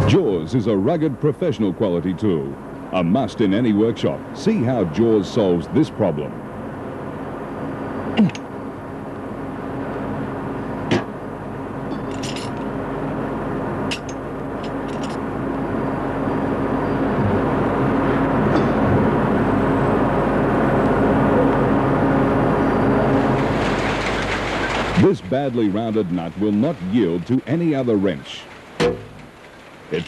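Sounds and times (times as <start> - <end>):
machine hum: 0.0 - 30.0.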